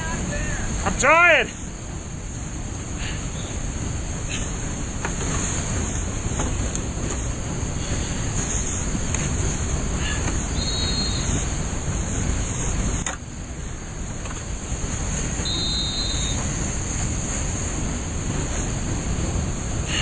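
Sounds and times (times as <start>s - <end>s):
river whitewater rushing: 0.0s - 20.0s.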